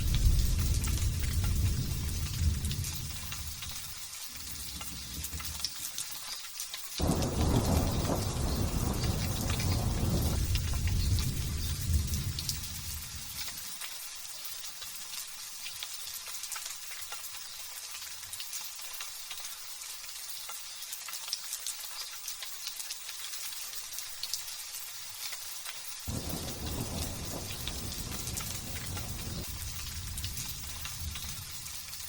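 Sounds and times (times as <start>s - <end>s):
low thunder rumble: 0.0s - 3.8s, 4.4s - 5.6s, 7.0s - 13.3s, 26.1s - 32.0s
light rain falling: 0.0s - 32.0s.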